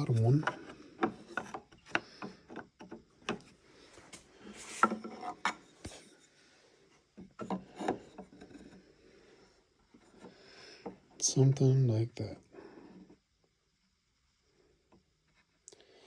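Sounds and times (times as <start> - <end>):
wood scraping on wood: 4.1 - 6.2.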